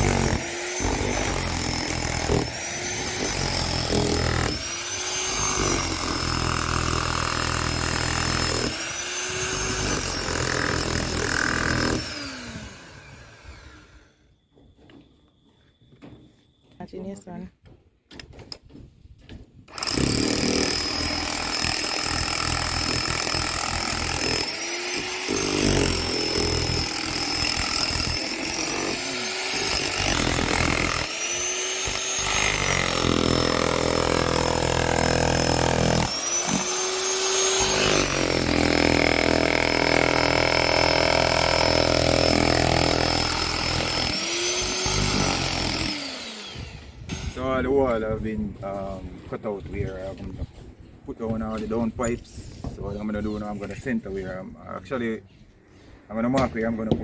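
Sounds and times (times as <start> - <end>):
power cutter whining: 0.0 - 14.2, 19.7 - 48.1.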